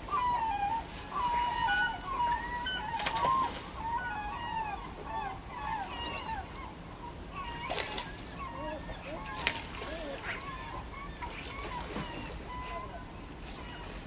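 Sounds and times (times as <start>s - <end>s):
birds calling: 0.0s - 14.0s.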